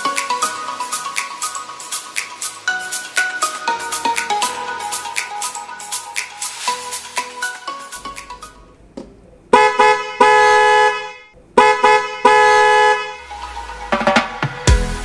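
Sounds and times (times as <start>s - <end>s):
background music: 0.0s - 8.9s, 13.2s - 15.0s
two-tone horn blasts: 9.5s - 13.6s.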